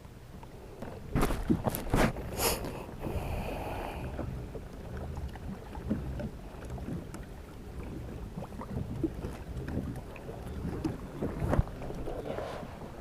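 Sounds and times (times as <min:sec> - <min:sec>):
wind buffeting microphone: 0:07.8 - 0:13.0.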